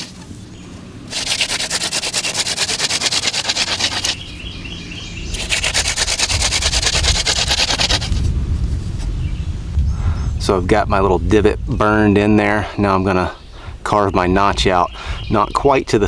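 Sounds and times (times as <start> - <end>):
wood-on-wood grinding of hand drill: 1.1 - 4.2, 5.3 - 8.2.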